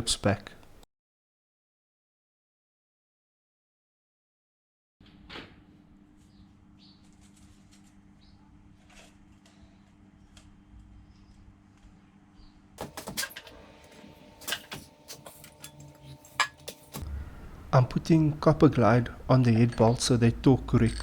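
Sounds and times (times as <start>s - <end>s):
steady low hum: 9.3s - 21.0s
ringing metal clanks: 19.6s - 21.0s.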